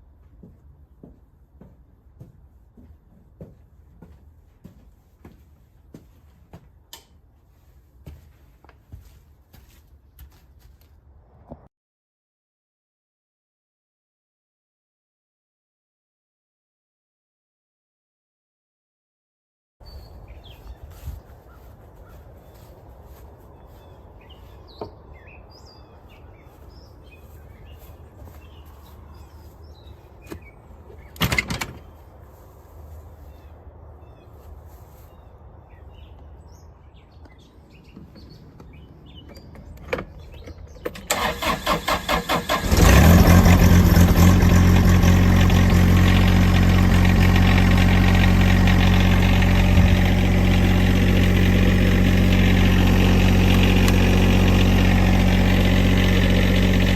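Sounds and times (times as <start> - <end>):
tractor engine running steadily: 38.2 - 56.9
tractor engine starter cranking: 40.9 - 44.6.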